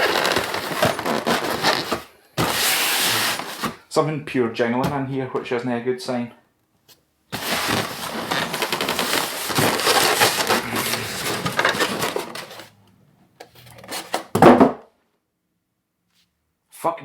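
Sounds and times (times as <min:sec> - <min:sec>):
packaging clatter and rustle: 0:00.0 - 0:03.8, 0:07.4 - 0:12.7, 0:13.7 - 0:14.4.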